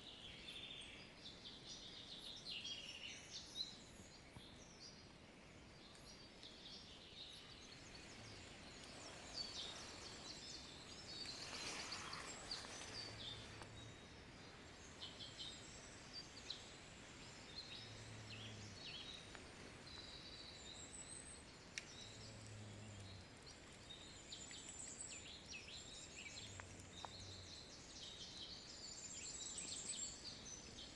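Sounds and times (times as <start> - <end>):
background hiss: 0.0 - 30.9
birds chirping and trilling: 0.0 - 30.9.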